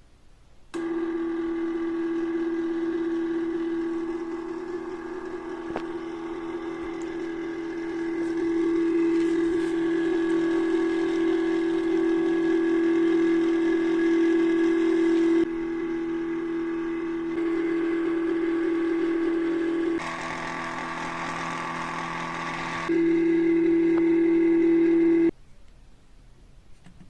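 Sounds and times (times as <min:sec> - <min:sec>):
thermal printer motor hum: 0:00.8 - 0:25.3.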